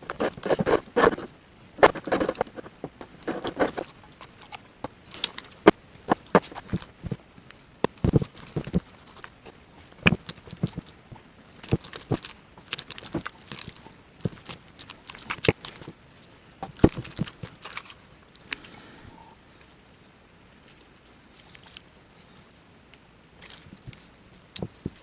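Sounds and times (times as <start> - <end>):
clicks taps and crinkles on tabletop: 0.0 - 16.0, 23.4 - 25.0.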